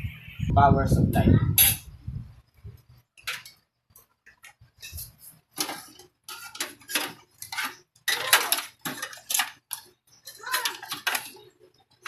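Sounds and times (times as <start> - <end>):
metal parts clinking in computer case: 5.6 - 11.5.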